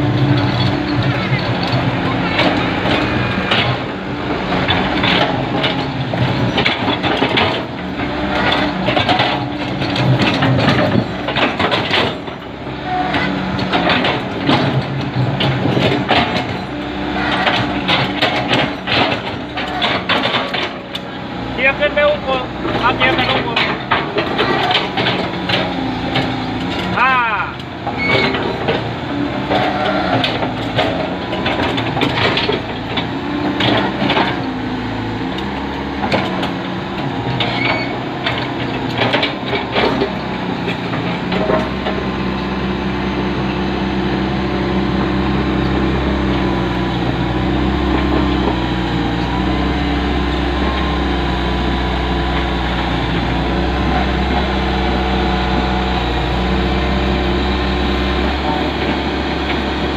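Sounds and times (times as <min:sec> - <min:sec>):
heavy diesel engine running: 0:00.0 - 0:59.9
knocks and clanks: 0:00.1 - 0:21.1, 0:21.8 - 0:34.6, 0:35.3 - 0:42.5.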